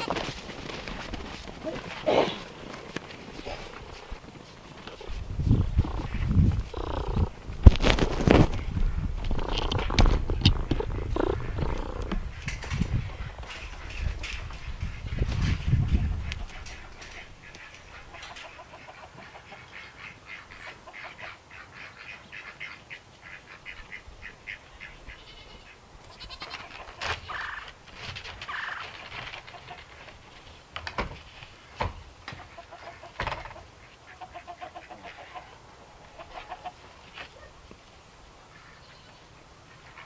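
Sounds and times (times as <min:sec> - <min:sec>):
chickens clucking: 0:00.0 - 0:25.1, 0:26.0 - 0:27.8, 0:32.3 - 0:37.5.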